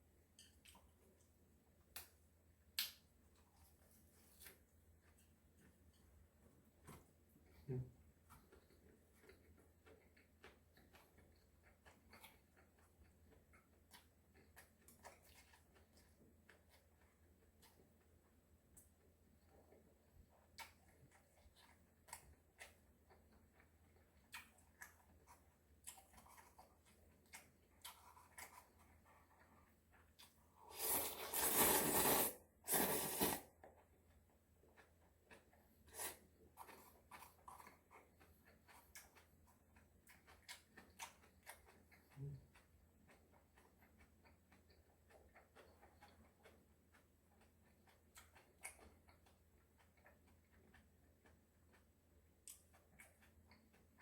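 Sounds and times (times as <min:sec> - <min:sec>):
chewing noises: 0:02.8 - 0:54.0.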